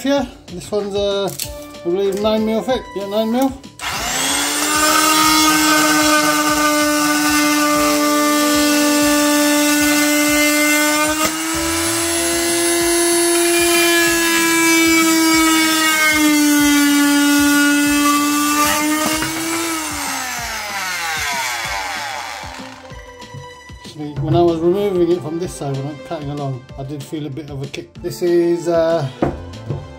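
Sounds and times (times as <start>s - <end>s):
oscillating multi-tool whining: 3.8s - 22.9s.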